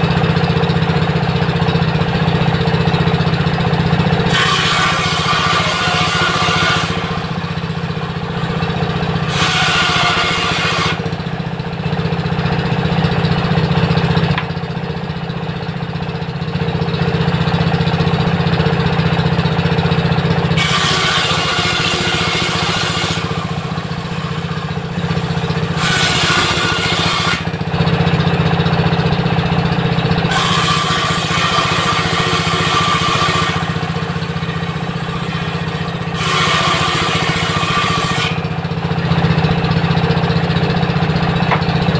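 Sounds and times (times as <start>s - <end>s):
saw blade cutting timber: 0.0s - 0.7s, 1.7s - 11.6s, 20.0s - 27.9s, 29.7s - 39.9s, 41.2s - 41.9s
diesel engine drone: 0.0s - 41.9s.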